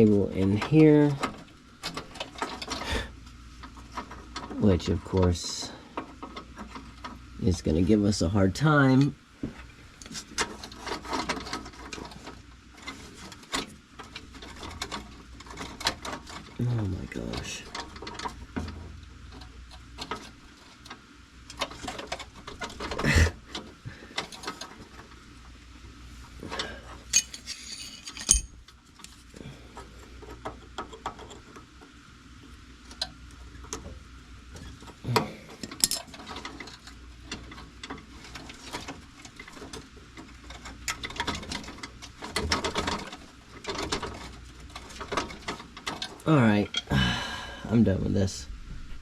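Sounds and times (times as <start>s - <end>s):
metal parts and tools clicking: 27.1s - 28.6s.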